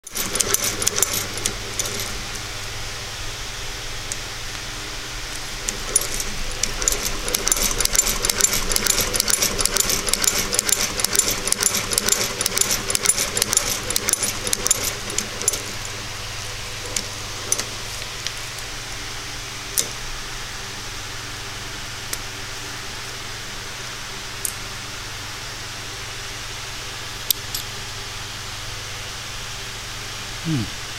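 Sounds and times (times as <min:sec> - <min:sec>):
sewing machine stitching: 0:00.0 - 0:02.4, 0:05.4 - 0:15.9, 0:16.7 - 0:17.8.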